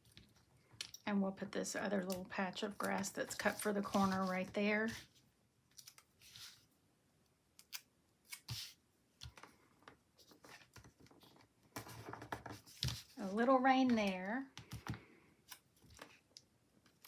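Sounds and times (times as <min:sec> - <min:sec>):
paper and sticker handling: 0:02.0 - 0:05.1.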